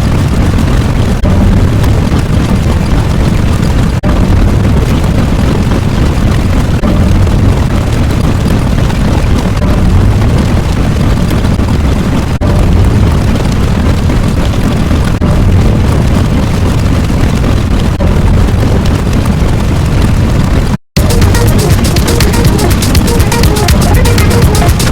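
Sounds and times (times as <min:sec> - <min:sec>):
low rumbling roar: 0:00.1 - 0:03.2, 0:09.5 - 0:20.3.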